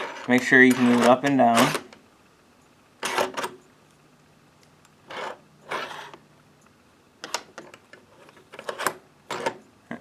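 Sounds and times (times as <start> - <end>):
metal lock scraping: 0.0 - 2.0, 3.0 - 3.6.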